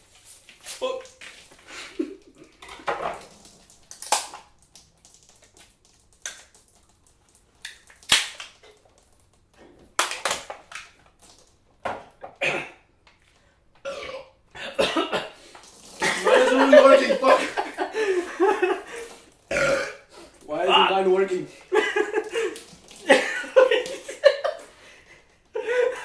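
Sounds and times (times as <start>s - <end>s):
men burping: 13.8s - 15.3s, 19.5s - 20.1s.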